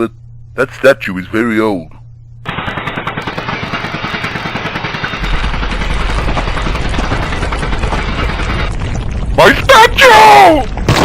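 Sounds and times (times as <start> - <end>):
deep rumble: 1.9 - 9.7.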